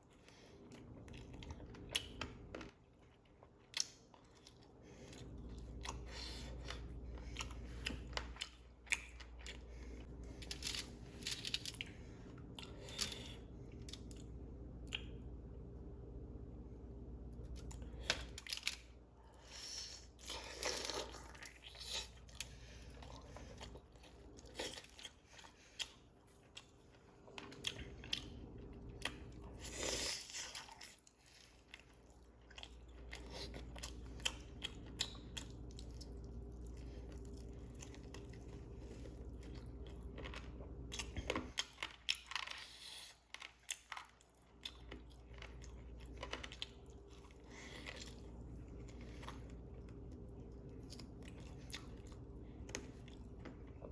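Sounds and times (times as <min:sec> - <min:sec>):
steady low hum: 0:00.0 - 0:53.9
crunchy chewing of chicken wings: 0:17.5 - 0:53.9.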